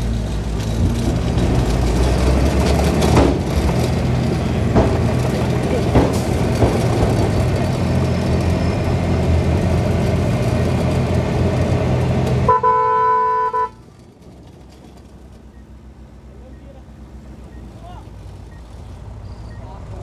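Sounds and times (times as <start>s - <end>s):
heavy machinery engine running: 0.0s - 20.0s
vehicle horn toot: 12.5s - 13.9s.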